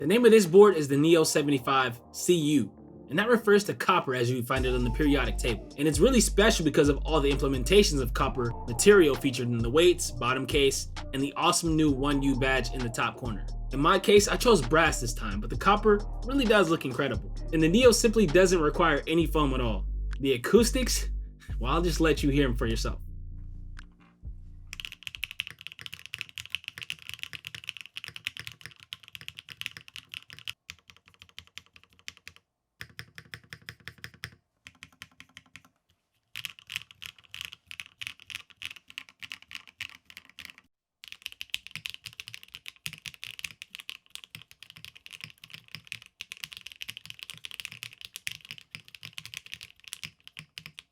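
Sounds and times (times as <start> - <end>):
mechanical keyboard typing: 24.7 - 35.7, 36.3 - 50.9.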